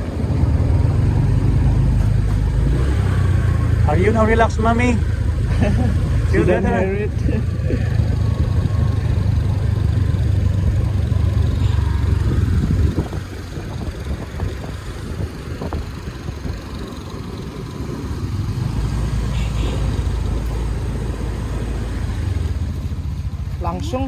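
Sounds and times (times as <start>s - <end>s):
scooter engine: 0.0s - 24.0s
wind rumbling on microphone: 4.8s - 23.5s.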